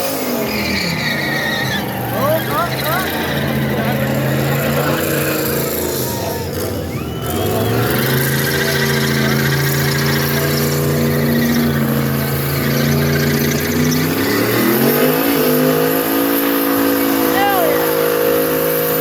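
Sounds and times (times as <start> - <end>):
car engine revving: 0.0 - 19.0.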